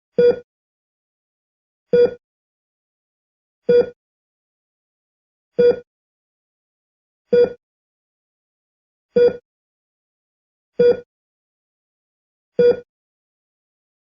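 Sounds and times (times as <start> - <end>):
heart monitor beeping: 0.2 - 0.5, 2.0 - 2.2, 3.7 - 4.0, 5.6 - 5.9, 7.3 - 7.6, 9.2 - 9.4, 10.8 - 11.1, 12.6 - 12.9.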